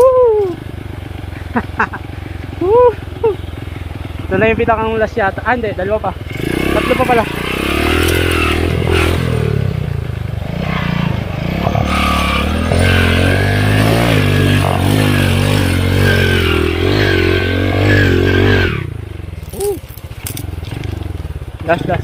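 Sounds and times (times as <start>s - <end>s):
motorcycle engine revving: 0.0s - 22.0s
clattering over rough ground: 19.3s - 22.0s.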